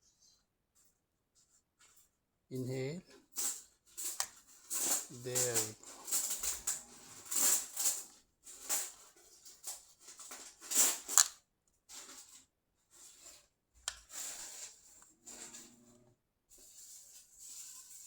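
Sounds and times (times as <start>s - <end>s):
crunchy crackling rustles of toy: 3.1s - 15.6s, 16.5s - 18.0s.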